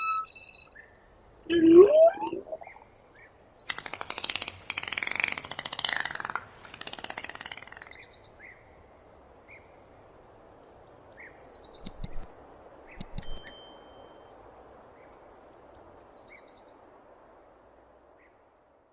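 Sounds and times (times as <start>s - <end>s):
dolphin whistles: 0.0s - 0.6s, 1.5s - 2.8s
dolphin clicks: 3.7s - 7.8s, 11.8s - 14.2s.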